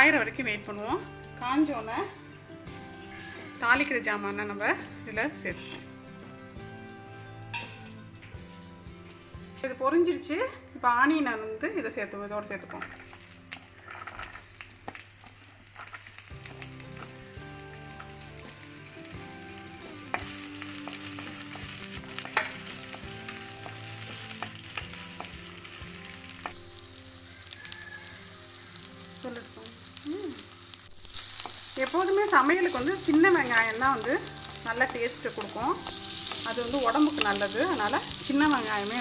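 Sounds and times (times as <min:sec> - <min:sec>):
onions sizzling in hot oil: 0:09.7 - 0:39.0.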